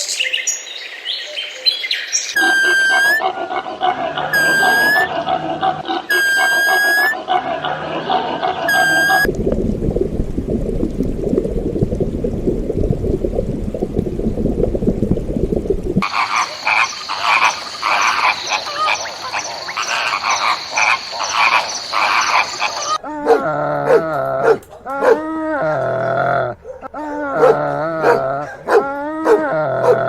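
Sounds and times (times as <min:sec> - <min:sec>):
steady high tone: 0:02.4 - 0:03.2, 0:04.4 - 0:05.1, 0:08.7 - 0:09.3
high pulsed animal calls: 0:02.4 - 0:03.3, 0:04.2 - 0:05.2, 0:05.8 - 0:07.3, 0:16.0 - 0:23.0
low rapid animal chorus: 0:16.0 - 0:23.0.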